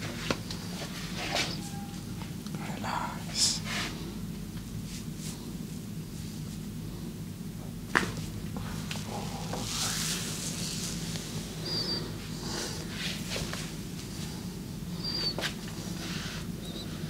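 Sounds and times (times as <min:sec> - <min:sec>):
steady low hum: 0:00.0 - 0:17.0
hands rubbing over skin: 0:08.9 - 0:11.6.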